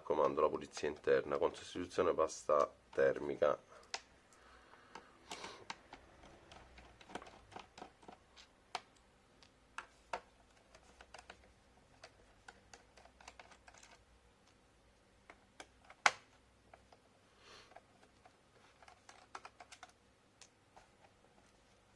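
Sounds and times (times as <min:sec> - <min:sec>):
screwdriver clicking on plastic: 0:04.9 - 0:14.0, 0:17.7 - 0:20.6.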